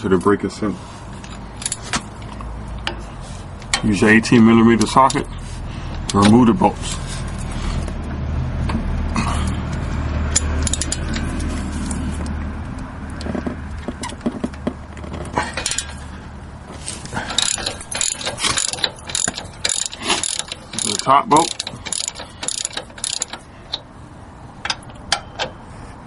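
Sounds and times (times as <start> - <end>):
low steady rumble: 0.0 - 26.0
ratchet wrench clicking rapidly: 10.4 - 11.2, 17.2 - 23.8.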